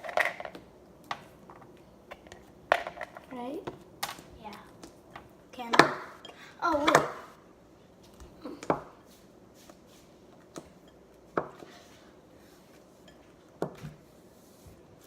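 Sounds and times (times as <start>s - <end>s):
bowls and utensils clattering: 0.0s - 3.3s.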